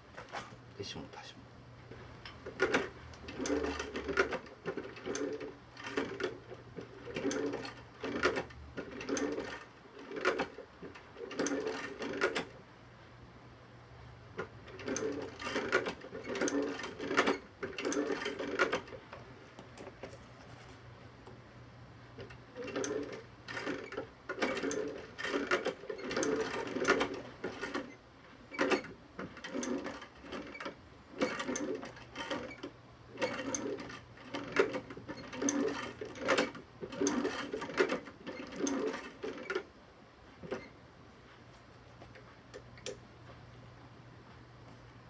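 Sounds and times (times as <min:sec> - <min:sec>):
sewing machine stitching leather: 0:01.9 - 0:12.6, 0:14.4 - 0:20.6, 0:22.2 - 0:39.7.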